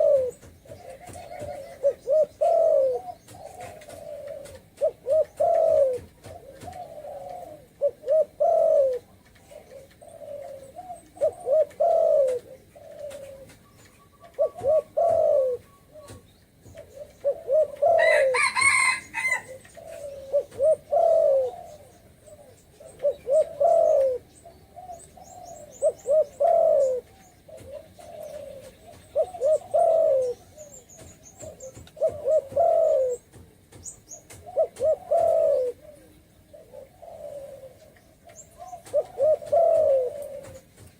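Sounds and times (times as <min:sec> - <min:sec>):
dove cooing: 0:00.0 - 0:40.9.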